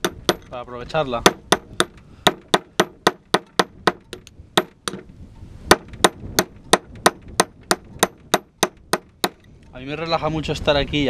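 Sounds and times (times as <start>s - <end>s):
hammer striking stone: 1.2s - 5.0s, 5.7s - 9.4s.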